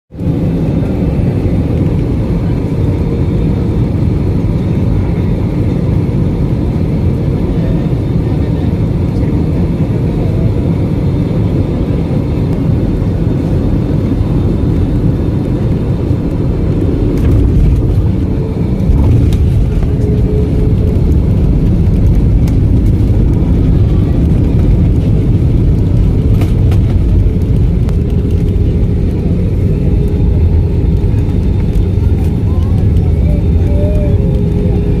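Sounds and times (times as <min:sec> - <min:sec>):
aircraft rumble: 0:00.1 - 0:35.0.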